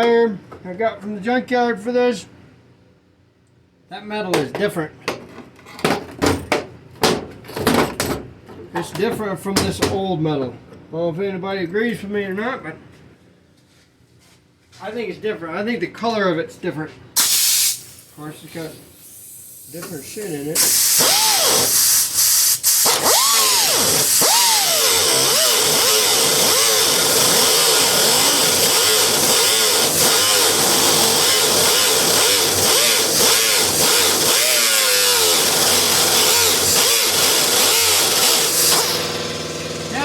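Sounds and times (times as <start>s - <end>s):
air hiss: 17.2s - 22.9s
air sander whining on steel: 17.6s - 40.0s.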